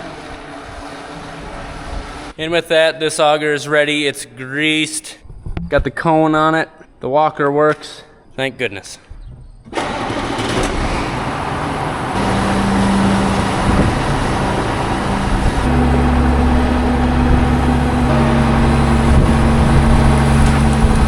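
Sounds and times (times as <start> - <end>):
engine speeding up: 10.0 - 21.0.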